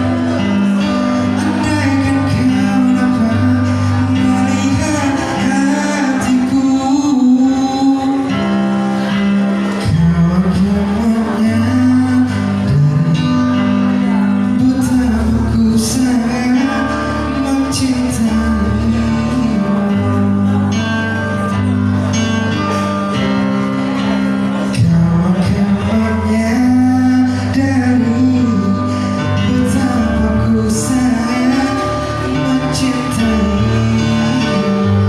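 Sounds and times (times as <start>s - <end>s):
instrumental backing with bass: 0.0s - 35.0s
man singing: 0.0s - 35.0s.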